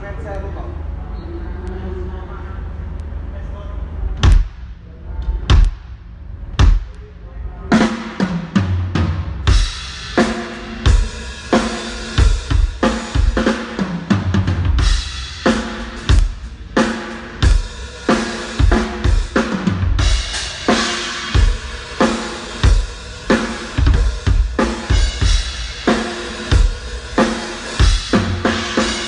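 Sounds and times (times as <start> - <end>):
drum kit beat: 4.2 - 7.0, 7.7 - 29.0
cymbals washing: 9.4 - 29.0.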